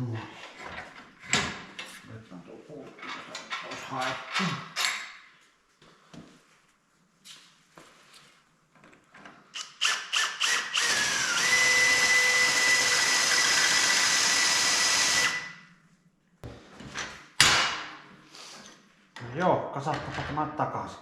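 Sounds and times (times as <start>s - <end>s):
electric drill whining: 9.6s - 15.6s.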